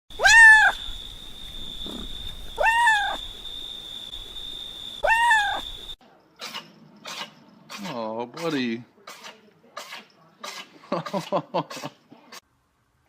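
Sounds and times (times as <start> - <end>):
cat meowing: 0.2 - 0.8, 2.6 - 3.2, 5.0 - 5.8.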